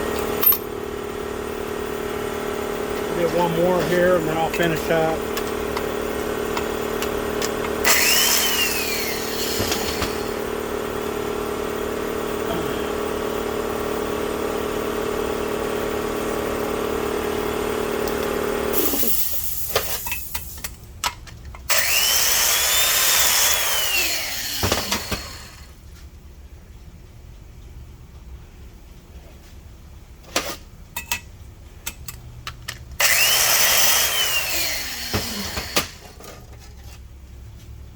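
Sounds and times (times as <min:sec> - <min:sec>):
grinder motor humming: 0:01.0 - 0:19.4, 0:21.7 - 0:25.7, 0:33.0 - 0:36.2.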